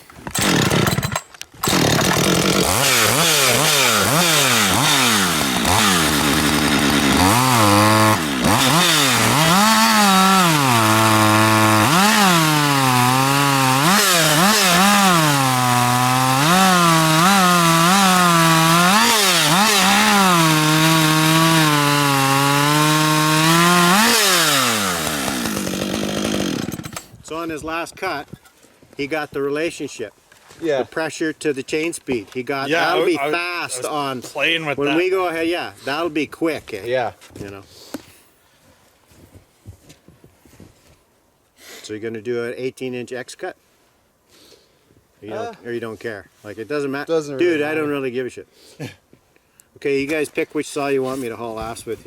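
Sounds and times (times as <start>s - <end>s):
chainsaw cutting log: 0.3s - 27.2s.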